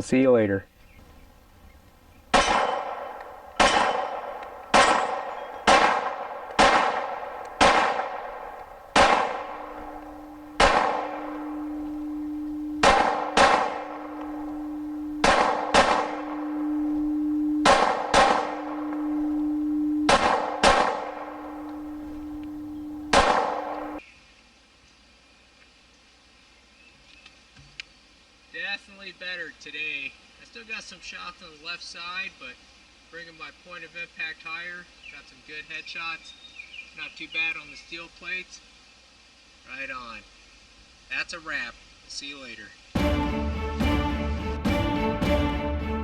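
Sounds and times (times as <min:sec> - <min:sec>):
pistol shots: 0:02.3 - 0:12.2, 0:12.8 - 0:16.8, 0:17.6 - 0:19.2, 0:20.1 - 0:21.8, 0:23.1 - 0:23.9
bullets ringing on steel plates: 0:02.4 - 0:24.0
steady low hum: 0:02.6 - 0:24.0.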